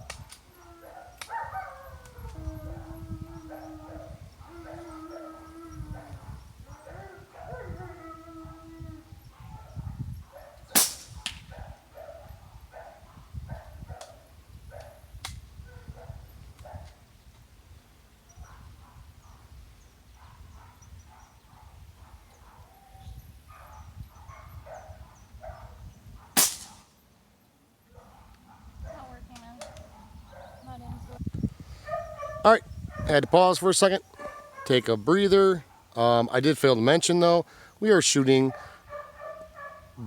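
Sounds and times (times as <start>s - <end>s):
air rifle shot crack: 10.7s - 11.5s, 26.4s - 26.9s.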